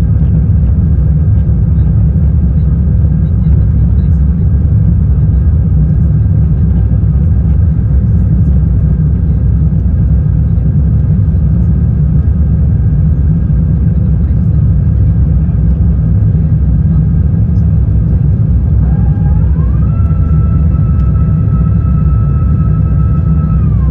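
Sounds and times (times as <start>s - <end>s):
cabin air noise: 0.0s - 23.9s
faint steady whining tones: 0.0s - 23.9s
jet engines rumbling in cabin: 0.0s - 23.9s.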